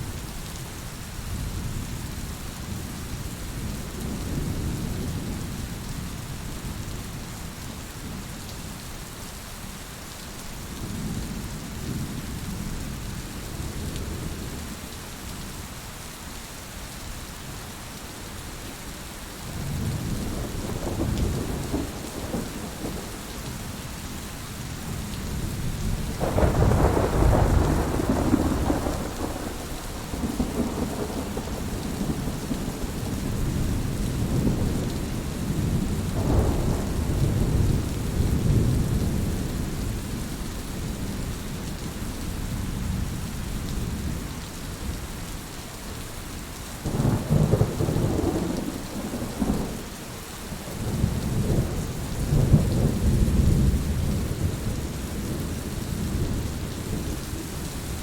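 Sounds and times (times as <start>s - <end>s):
heavy rain falling: 0.0s - 58.0s
thunder rumbling: 19.6s - 23.8s, 24.9s - 39.8s, 46.9s - 49.9s, 50.7s - 57.1s.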